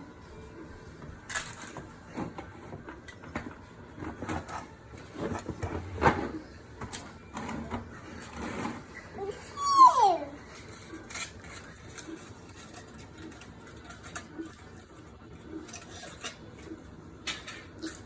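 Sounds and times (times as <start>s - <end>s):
kitchen things knocking and clicking: 10.5s - 18.0s.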